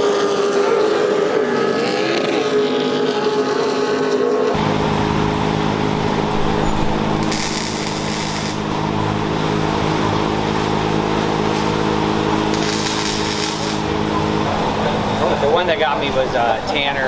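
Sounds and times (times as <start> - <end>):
truck engine running steadily: 4.5 - 17.0
rough hiss: 7.2 - 8.6, 12.5 - 13.9.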